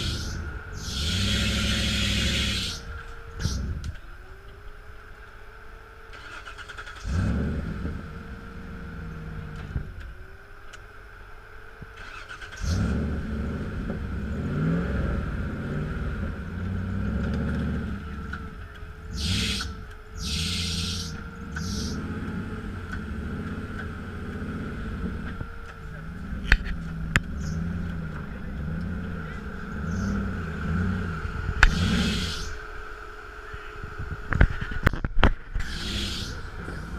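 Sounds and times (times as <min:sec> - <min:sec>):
short hissing noises: 0:00.0 - 0:03.6
off-road engine revving: 0:00.0 - 0:36.9
steady whine: 0:00.0 - 0:36.9.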